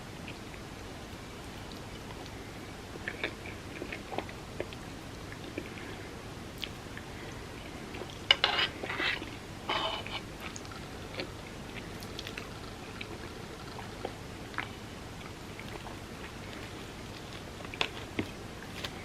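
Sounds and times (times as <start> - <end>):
chewing: 3.0 - 5.9, 10.1 - 19.0
crackly crunching: 10.1 - 19.0.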